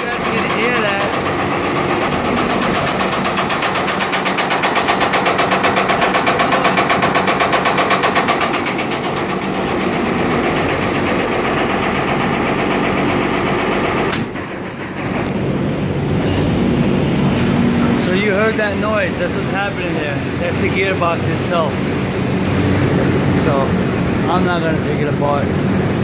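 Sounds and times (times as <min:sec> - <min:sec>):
fan gearbox rattling knock: 0:00.0 - 0:16.2
sharp click: 0:14.1 - 0:14.4.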